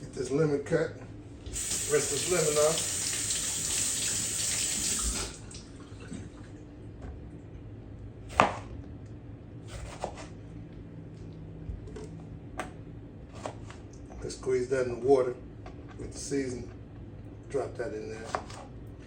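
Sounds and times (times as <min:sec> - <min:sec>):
faucet running water: 0:01.5 - 0:06.6.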